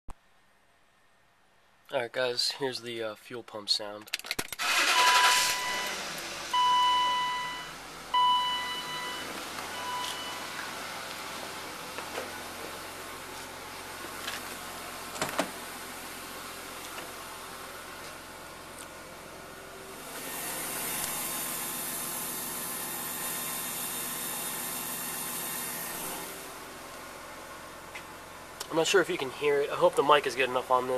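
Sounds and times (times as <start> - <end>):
fuel pump whirring: 4.6 - 18.0, 19.8 - 26.7
dashboard warning chime beeps: 4.8 - 10.6.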